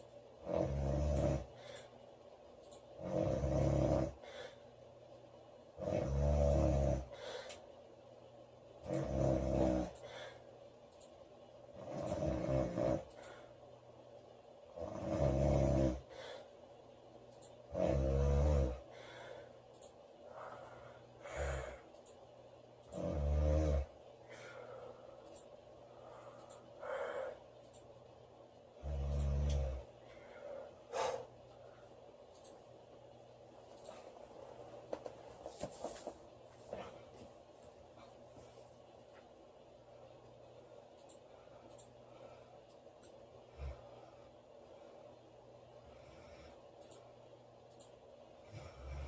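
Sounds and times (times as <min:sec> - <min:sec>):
woman snoring loudly: 0:00.4 - 0:01.5, 0:03.0 - 0:04.2, 0:05.8 - 0:07.2, 0:08.9 - 0:10.0, 0:11.8 - 0:13.1, 0:14.8 - 0:16.1, 0:17.7 - 0:18.8, 0:23.0 - 0:23.9.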